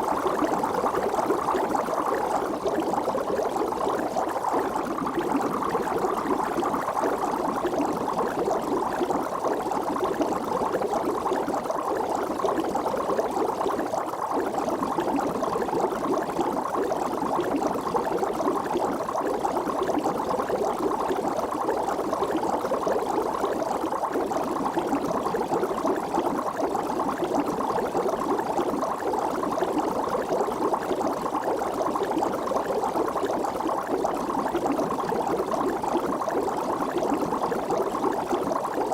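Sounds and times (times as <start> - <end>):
water bubbling: 0.0 - 38.9.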